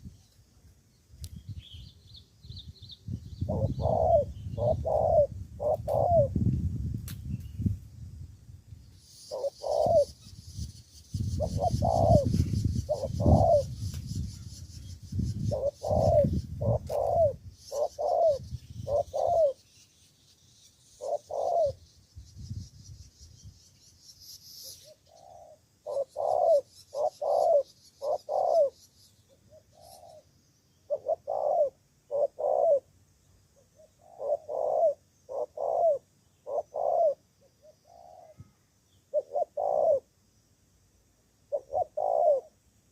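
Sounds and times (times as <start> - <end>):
dove cooing: 3.4 - 6.4, 9.3 - 10.2, 11.2 - 14.2, 15.1 - 19.6, 21.0 - 21.8, 24.8 - 28.8, 29.4 - 30.3, 30.9 - 32.9, 33.6 - 38.5, 39.1 - 40.1, 41.5 - 42.6.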